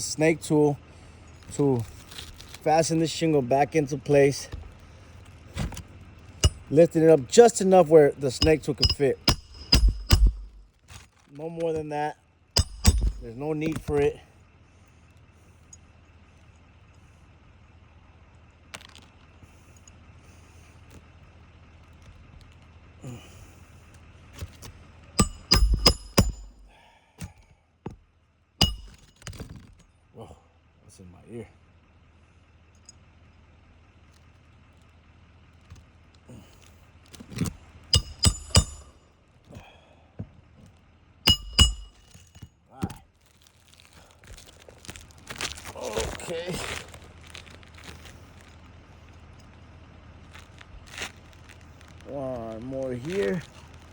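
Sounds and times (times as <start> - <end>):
low outdoor rumble: 0.0 - 53.9
hammer striking metal tool: 6.4 - 6.8, 8.3 - 10.7, 12.6 - 13.8, 25.2 - 26.7, 28.6 - 29.4, 37.9 - 39.0, 41.3 - 42.5.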